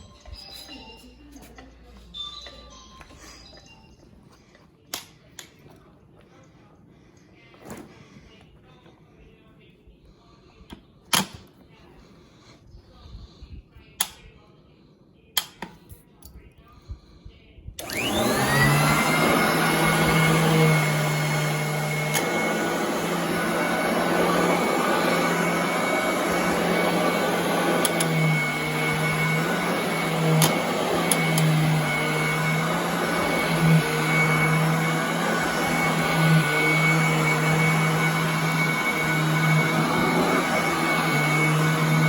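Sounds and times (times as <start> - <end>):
vacuum cleaner running: 17.8 - 42.0.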